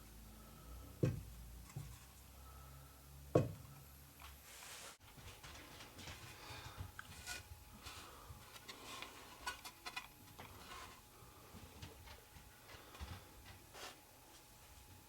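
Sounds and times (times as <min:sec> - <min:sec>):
low steady hum: 0:00.0 - 0:15.0
dull knocks: 0:01.0 - 0:02.0, 0:03.4 - 0:03.7.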